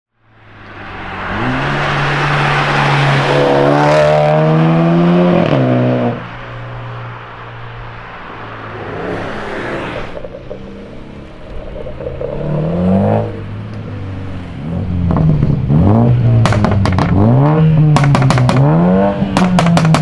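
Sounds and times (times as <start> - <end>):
car engine exhaust revving: 8.2 - 20.0.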